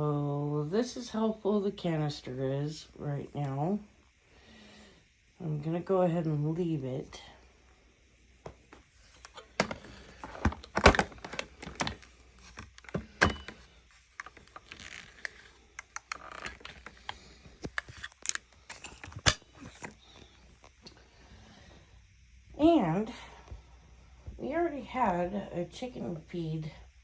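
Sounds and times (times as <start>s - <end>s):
plastic clicks and knocks: 9.2s - 13.6s.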